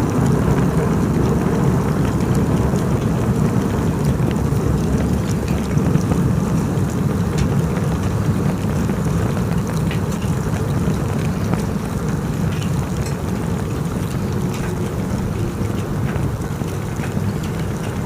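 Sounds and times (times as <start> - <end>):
campfire crackling: 0.0 - 18.0
sharp fire pops: 0.1 - 18.0
low rumble: 10.2 - 18.0.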